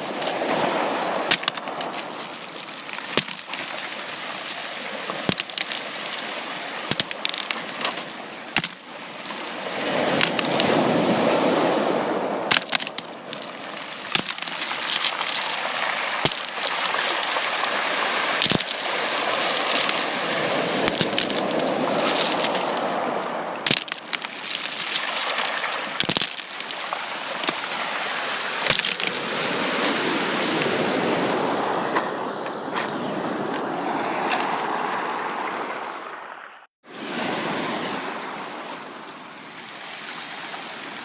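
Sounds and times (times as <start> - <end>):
sea waves washing onto beach: 0.0 - 41.0
sharp clicks and crackles: 12.5 - 13.4, 14.1 - 15.6, 16.2 - 17.8, 18.4 - 20.1, 20.8 - 22.9, 23.6 - 27.6.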